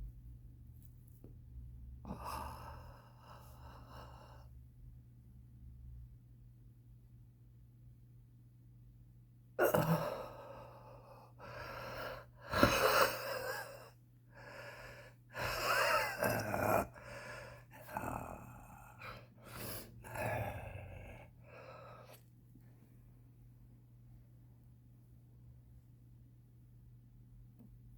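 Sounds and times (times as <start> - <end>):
person gasping and wheezing: 9.6 - 22.2.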